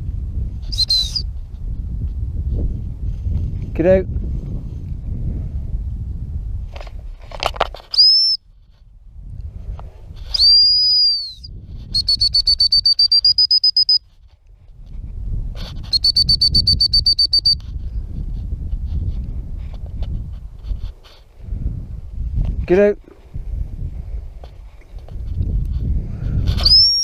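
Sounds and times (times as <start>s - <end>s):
dog whistle blasts and pips: 0.6s - 1.3s, 7.8s - 8.4s, 10.2s - 14.1s, 15.6s - 17.7s, 26.5s - 27.0s.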